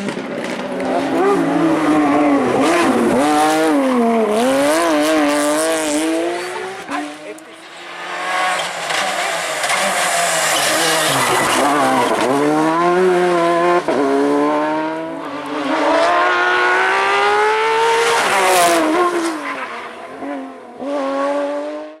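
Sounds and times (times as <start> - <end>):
rally car engine at full throttle: 0.0 - 22.0.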